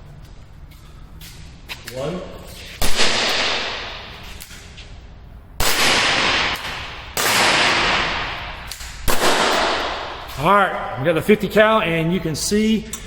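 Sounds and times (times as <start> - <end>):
air pistol shots: 2.8 - 4.2, 5.6 - 10.3.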